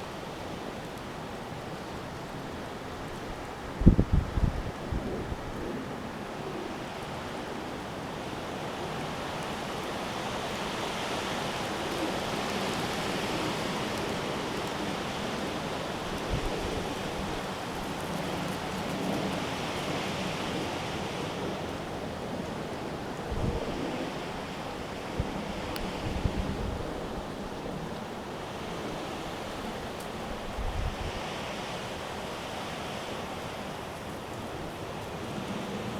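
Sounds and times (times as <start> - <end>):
wind buffeting microphone: 3.4 - 6.0, 25.1 - 31.3.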